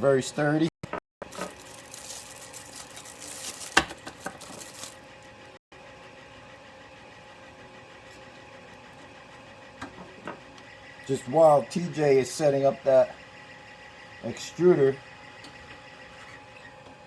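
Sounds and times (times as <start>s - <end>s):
rustling and handling noise: 1.3s - 5.4s.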